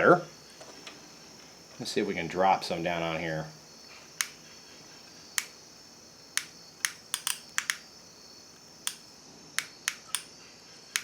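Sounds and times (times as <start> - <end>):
soldering gun trigger clicks: 6.4 - 7.8.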